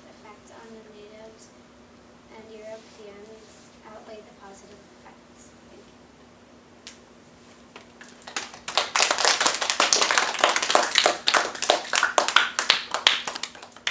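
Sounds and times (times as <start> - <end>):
hands clapping in applause: 8.0 - 13.9.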